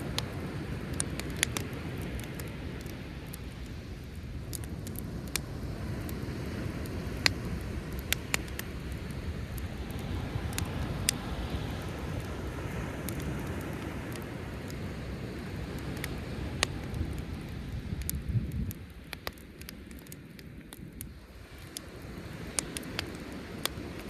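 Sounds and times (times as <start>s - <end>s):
sea waves rumbling: 0.0s - 18.6s
campfire crackling and popping: 0.0s - 24.0s.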